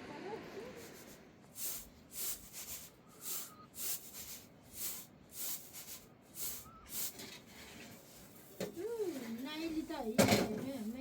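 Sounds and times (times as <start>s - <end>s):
rough hissing scraping: 0.6s - 9.3s.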